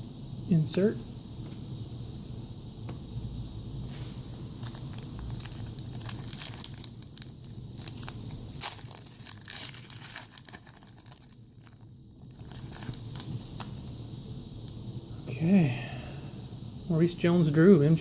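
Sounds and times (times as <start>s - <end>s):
foil wrapper tearing and crinkling: 4.6s - 13.9s.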